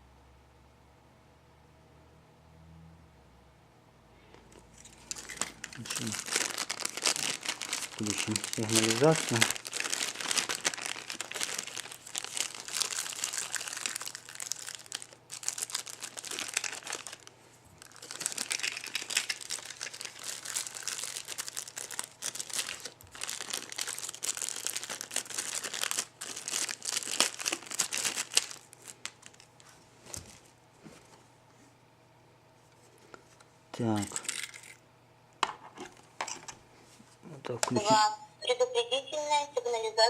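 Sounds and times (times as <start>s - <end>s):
faint low hum: 0.0s - 40.0s
packaging crinkling: 4.5s - 30.5s, 34.0s - 34.8s.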